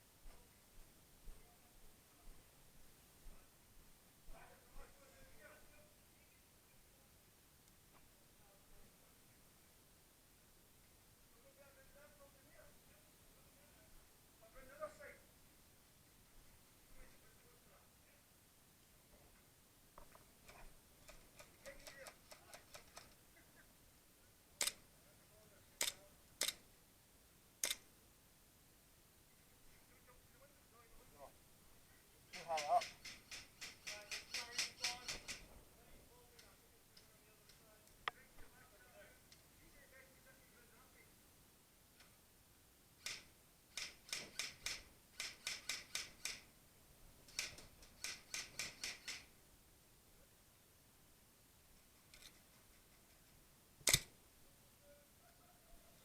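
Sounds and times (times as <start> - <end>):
short sharp clicks: 27.6 - 27.8, 53.8 - 54.1.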